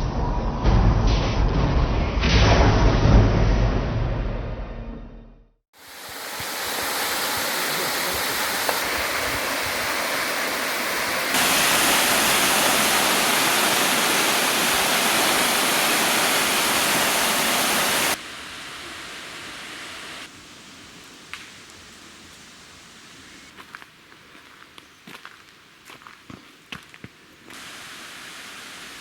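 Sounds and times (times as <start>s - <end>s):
waterfall rushing: 5.8s - 20.3s, 27.5s - 29.0s.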